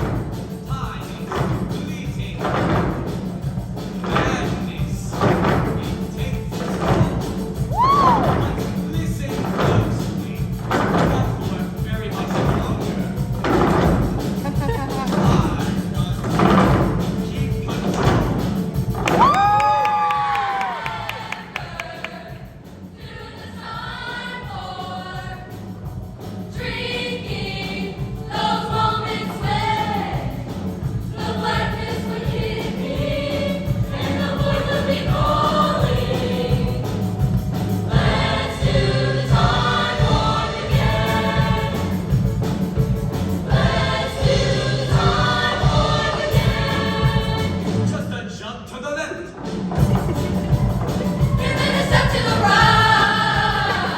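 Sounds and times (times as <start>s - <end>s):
low percussion beat: 0.0s - 48.2s, 49.3s - 53.9s
girls' choir singing: 20.4s - 25.9s, 26.5s - 47.9s, 50.0s - 53.9s.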